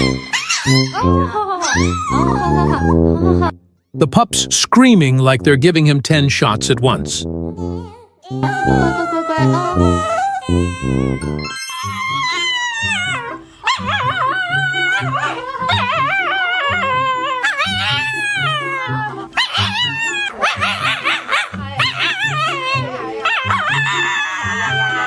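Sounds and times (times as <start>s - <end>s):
dog howling: 1.6s - 3.1s, 7.6s - 25.0s.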